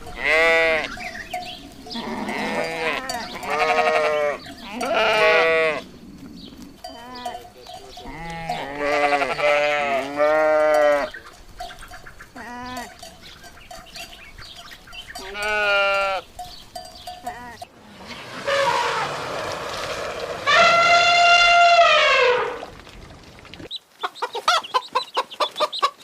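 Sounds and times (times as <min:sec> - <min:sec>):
goats bleating: 0:00.0 - 0:06.0, 0:06.8 - 0:11.3, 0:12.2 - 0:13.1, 0:15.0 - 0:16.3, 0:17.2 - 0:17.7.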